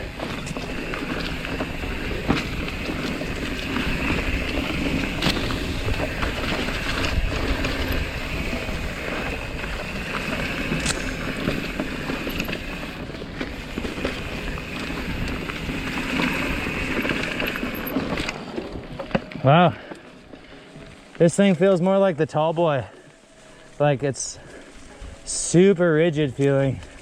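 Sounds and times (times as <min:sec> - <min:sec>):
bike clicking and knocking: 0:00.0 - 0:20.4
bike tyres on dirt trail: 0:00.0 - 0:27.0
wind on microphone: 0:01.7 - 0:11.4.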